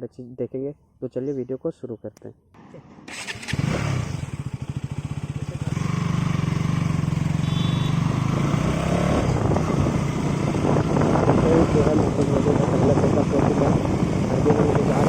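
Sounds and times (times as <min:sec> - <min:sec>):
motorcycle engine idling: 0:02.6 - 0:08.2.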